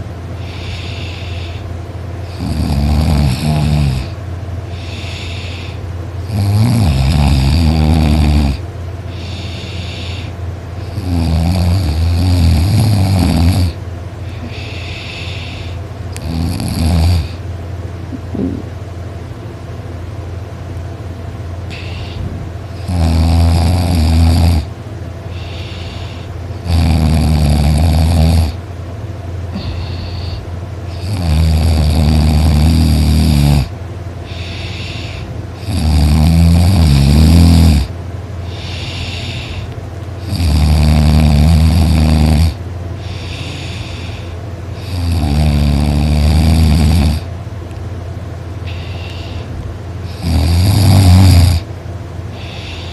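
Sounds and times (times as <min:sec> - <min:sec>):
person snoring loudly: 0:02.2 - 0:17.4, 0:21.7 - 0:22.2, 0:22.8 - 0:24.7, 0:25.3 - 0:28.6, 0:29.5 - 0:33.7, 0:34.3 - 0:37.9, 0:38.5 - 0:47.3, 0:48.7 - 0:51.7, 0:52.3 - 0:52.9.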